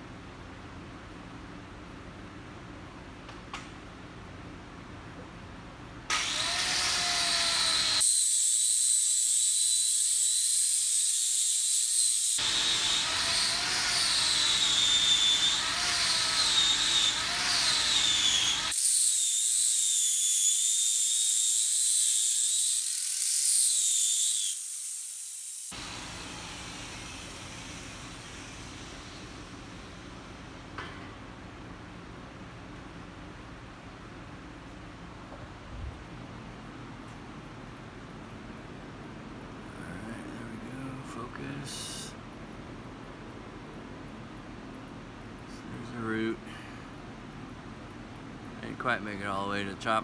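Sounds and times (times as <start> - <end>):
welding arc hissing: 8.0 - 28.7.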